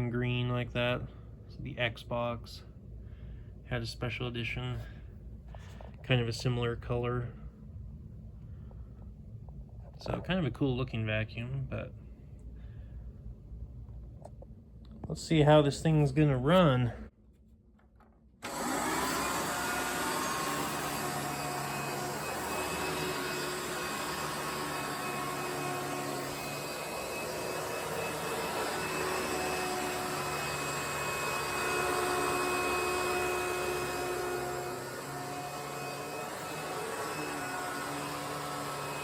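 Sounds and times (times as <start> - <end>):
vacuum cleaner running: 18.4 - 39.0.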